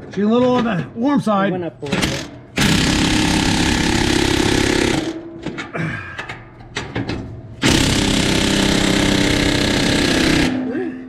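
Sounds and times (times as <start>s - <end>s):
pneumatic air hammer on metal pipe: 2.0s - 5.2s, 7.6s - 10.6s.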